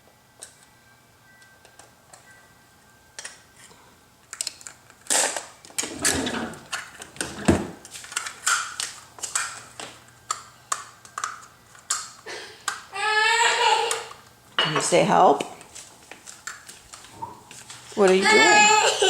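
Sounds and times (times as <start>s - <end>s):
small objects clicking and rustling: 4.3s - 5.9s, 6.7s - 12.9s, 15.4s - 18.2s.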